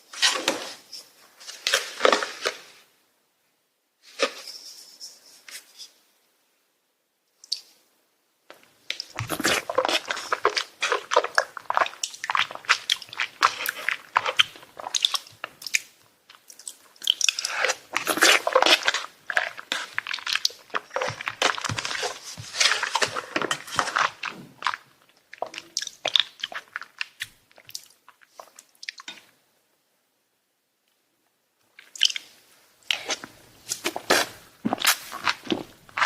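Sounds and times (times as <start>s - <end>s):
person chewing crunchy food: 9.0s - 29.1s, 32.9s - 36.0s.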